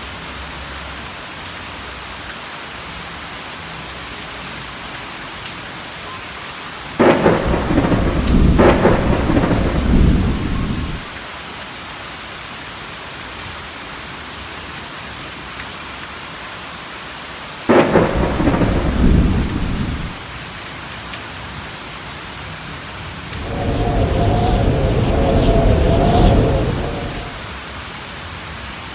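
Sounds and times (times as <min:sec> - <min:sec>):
steady rain: 0:06.8 - 0:11.2, 0:17.6 - 0:20.5, 0:23.2 - 0:27.7
thunder cracking and rumbling: 0:07.0 - 0:11.2, 0:17.7 - 0:20.3, 0:23.3 - 0:27.7.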